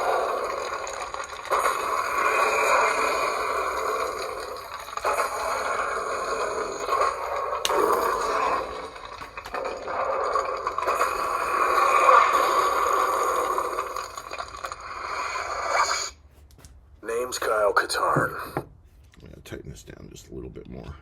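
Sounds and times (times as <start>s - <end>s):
lightsaber hum: 0.0s - 16.1s.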